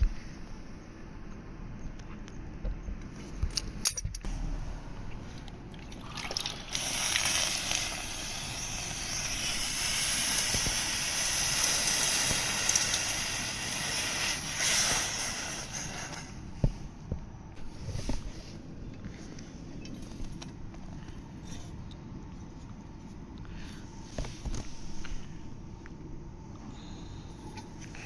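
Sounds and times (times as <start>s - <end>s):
water rushing through pipe: 5.0s - 16.1s.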